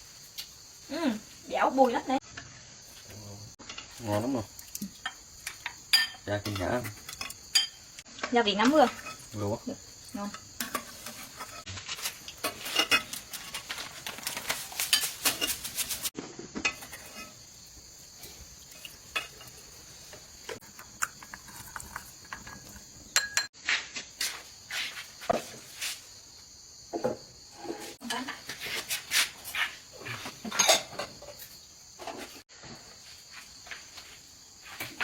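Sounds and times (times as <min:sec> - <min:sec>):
insects droning: 0:00.0 - 0:35.0
utensils clinking against pots: 0:04.8 - 0:08.0, 0:08.6 - 0:09.5, 0:10.3 - 0:17.4, 0:18.2 - 0:23.5, 0:30.4 - 0:31.3.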